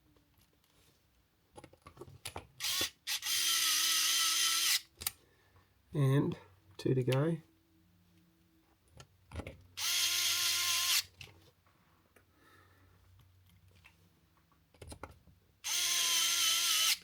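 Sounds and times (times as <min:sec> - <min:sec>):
electric screwdriver whine: 0:02.6 - 0:04.8, 0:09.8 - 0:11.1, 0:15.7 - 0:17.0.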